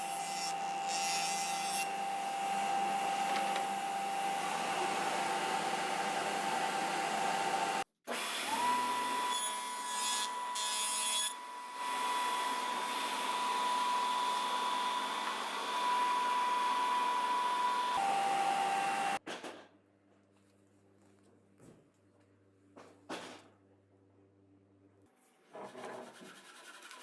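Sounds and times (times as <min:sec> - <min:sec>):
power tool whining on wood: 0:00.0 - 0:19.2.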